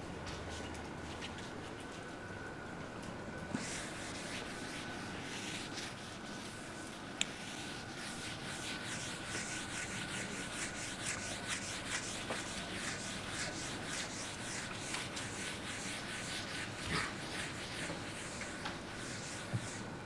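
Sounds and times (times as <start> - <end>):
scratchy writing on board: 3.6 - 6.6, 7.3 - 19.9.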